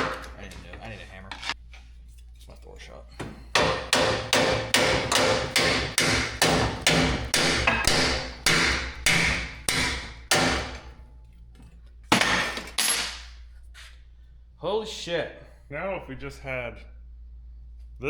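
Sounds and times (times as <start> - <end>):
hammer ringing on steel: 3.6 - 10.8.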